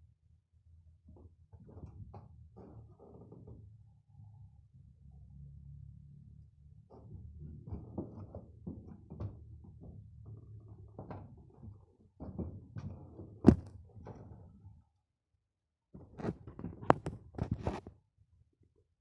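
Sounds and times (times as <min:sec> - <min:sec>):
knocks and thumps: 0:06.9 - 0:14.5, 0:16.0 - 0:17.9.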